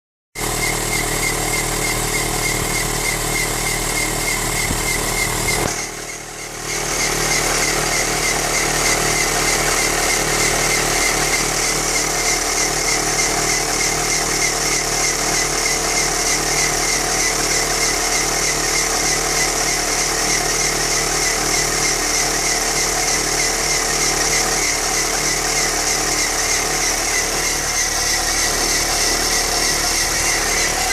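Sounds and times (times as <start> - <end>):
car engine running: 0.4 - 16.8, 21.3 - 30.9
high wavering squeal: 26.3 - 30.9.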